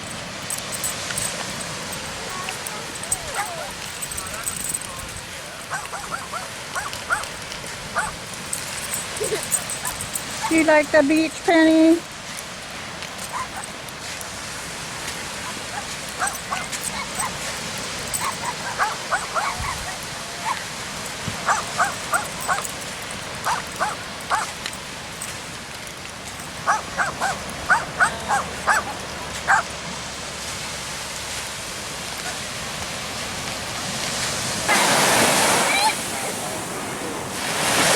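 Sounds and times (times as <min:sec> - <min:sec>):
puppy yipping: 0:00.0 - 0:11.5, 0:13.1 - 0:13.8, 0:15.4 - 0:25.4, 0:26.2 - 0:29.8.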